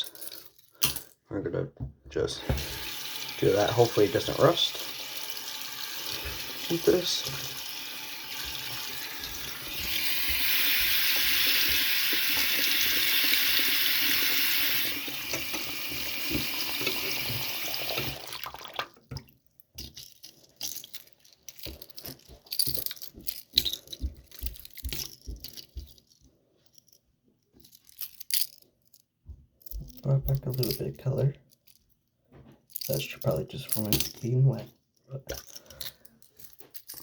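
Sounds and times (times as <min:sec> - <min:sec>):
tap water running into sink: 0:02.3 - 0:19.2
small handling clicks and knocks: 0:19.6 - 0:37.0.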